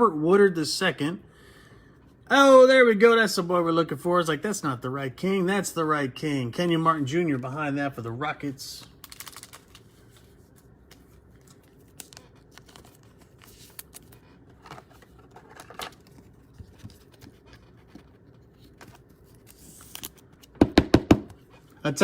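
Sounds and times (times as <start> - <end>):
trading cards rustling: 8.7 - 21.7.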